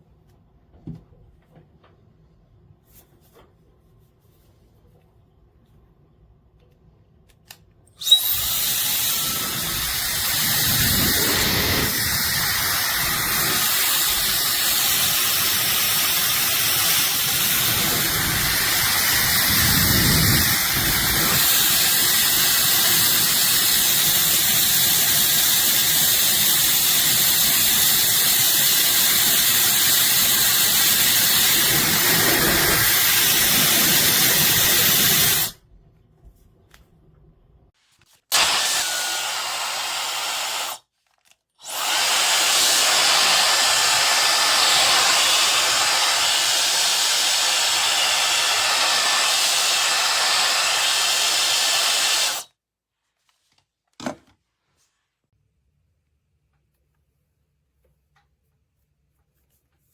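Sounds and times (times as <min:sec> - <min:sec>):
hair dryer running: 0:08.0 - 0:35.6, 0:38.3 - 0:40.8, 0:41.6 - 0:52.5.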